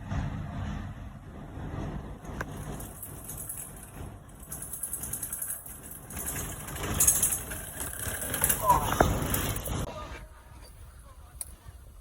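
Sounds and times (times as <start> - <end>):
bike tyres rumbling on rough ground: 2.3 - 9.9.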